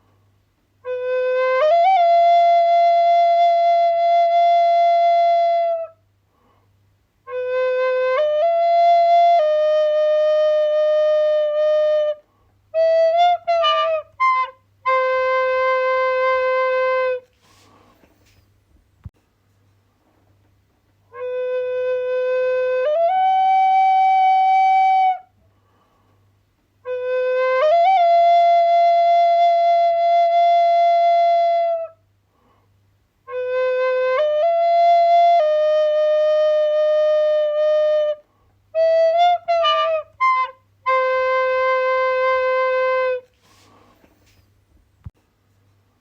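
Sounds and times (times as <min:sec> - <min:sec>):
flute playing long notes: 0:00.8 - 0:06.0, 0:07.3 - 0:17.3, 0:21.1 - 0:25.3, 0:26.8 - 0:32.0, 0:33.3 - 0:43.3.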